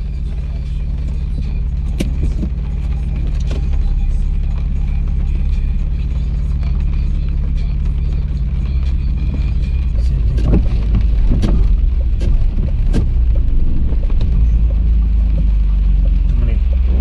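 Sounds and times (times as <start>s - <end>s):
car engine and tyres on wet road: 0.0s - 17.0s
heavy rain: 0.0s - 17.0s
sharp ticks and knocks: 10.3s - 16.2s.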